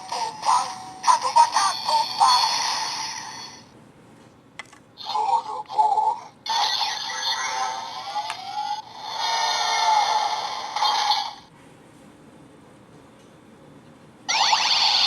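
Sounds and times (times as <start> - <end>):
synthesized voice: 0.0 - 3.6, 5.0 - 8.8
toy belt electronic sound effects: 0.0 - 3.6, 5.0 - 11.4, 14.3 - 15.0.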